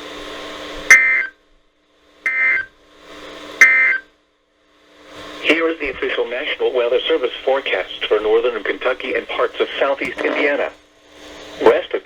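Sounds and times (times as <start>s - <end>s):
digital data tone bursts: 0.9s - 1.3s, 2.3s - 2.7s, 3.6s - 4.0s
radio hiss: 5.2s - 12.0s.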